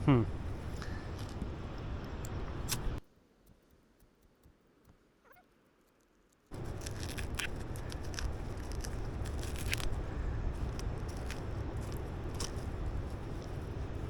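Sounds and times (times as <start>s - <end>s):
flint and steel clicks: 5.8s - 10.0s
dry tinder handling: 6.0s - 13.6s
low outdoor rumble: 6.5s - 14.0s.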